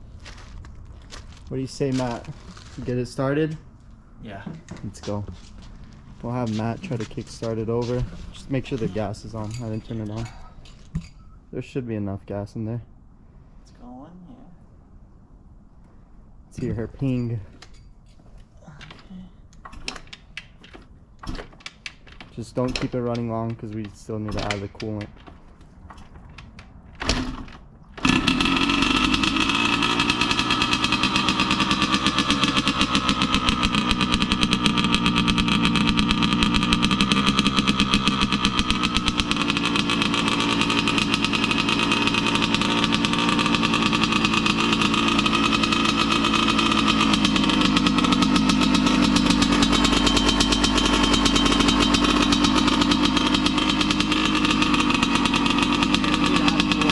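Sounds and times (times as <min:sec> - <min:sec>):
two-stroke engine idling: 0:04.6 - 0:10.8, 0:28.0 - 0:56.9.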